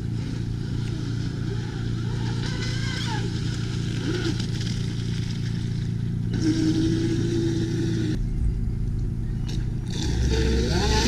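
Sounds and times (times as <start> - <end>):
toy boat electric motor running: 0.0 - 5.7, 6.3 - 8.2.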